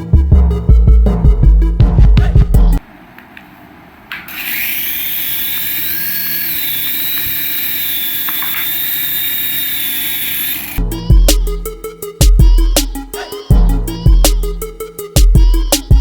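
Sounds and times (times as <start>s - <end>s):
electric toy motor whining: 4.3s - 10.8s.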